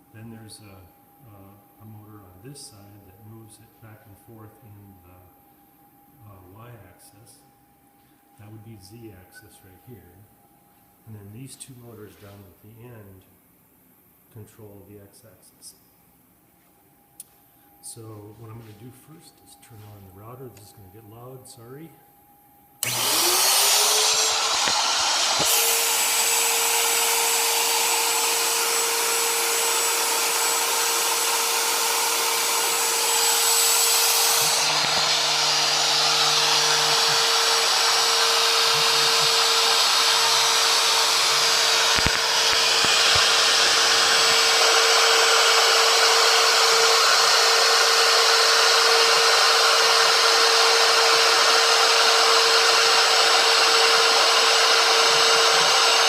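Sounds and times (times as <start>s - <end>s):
wood router high whine: 22.8s - 56.0s
sharp click: 41.9s - 43.3s.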